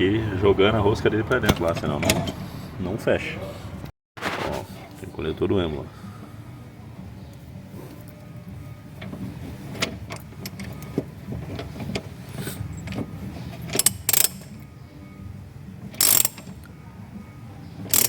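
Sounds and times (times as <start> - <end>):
tool ratcheting clicks: 13.7 - 14.5, 16.0 - 16.5.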